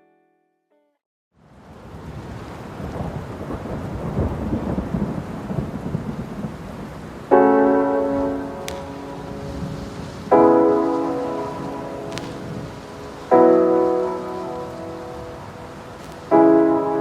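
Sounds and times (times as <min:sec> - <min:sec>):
rain: 0:01.4 - 0:17.0
thunder rumbling: 0:01.8 - 0:17.0
piano chord ringing: 0:07.3 - 0:17.0.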